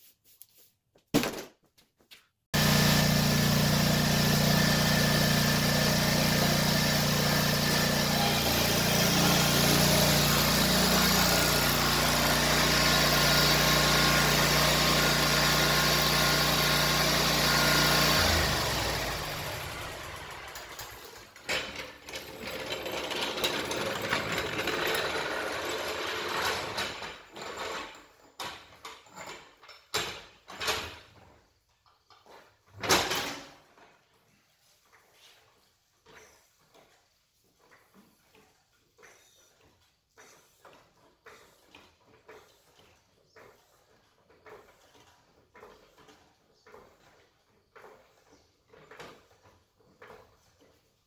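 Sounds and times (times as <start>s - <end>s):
small gas engine running: 2.6s - 27.4s.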